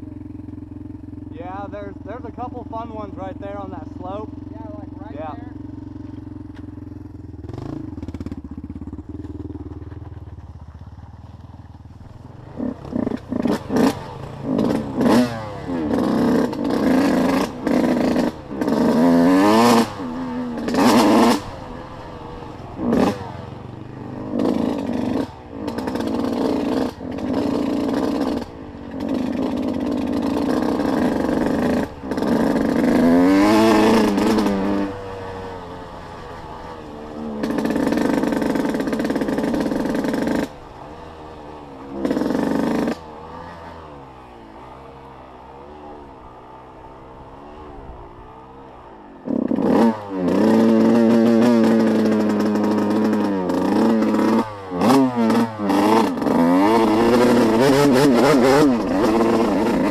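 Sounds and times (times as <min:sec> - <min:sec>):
off-road vehicle engine revving: 0:00.0 - 0:10.0, 0:12.1 - 0:59.9.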